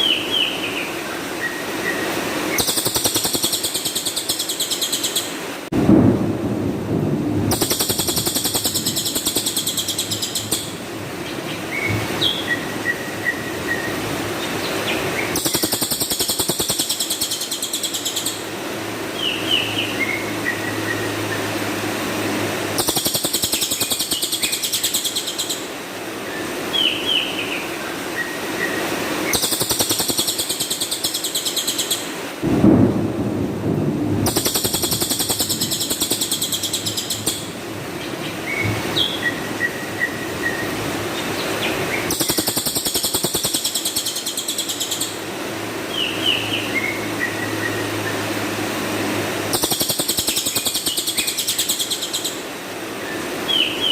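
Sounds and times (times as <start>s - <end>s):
songbird rapid rattling notes: 2.6s - 5.2s, 7.5s - 10.8s, 15.3s - 18.2s, 22.7s - 25.5s, 29.3s - 32.0s, 34.3s - 37.6s, 42.1s - 45.0s, 49.5s - 52.2s.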